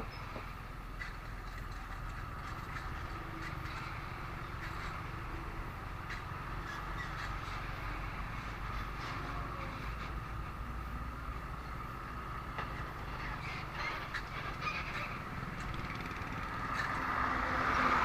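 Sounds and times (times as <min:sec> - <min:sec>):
road and traffic noise: 0:00.0 - 0:18.0
motorcycle engine running: 0:15.6 - 0:16.8.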